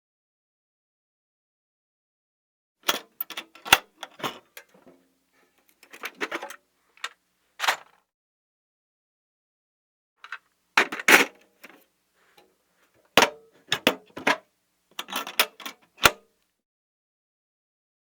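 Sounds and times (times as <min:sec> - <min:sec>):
toolbox clicking and clattering: 0:02.9 - 0:05.0, 0:05.8 - 0:07.9, 0:10.2 - 0:11.8, 0:13.2 - 0:14.4, 0:15.0 - 0:16.2.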